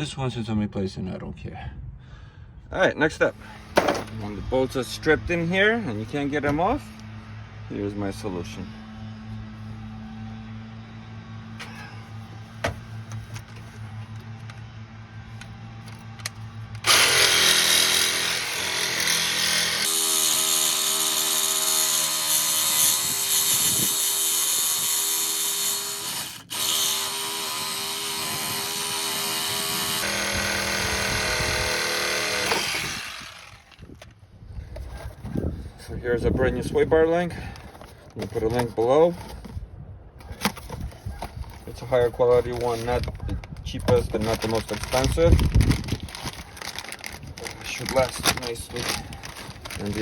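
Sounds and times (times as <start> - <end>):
power tool running hard: 16.8 - 33.8.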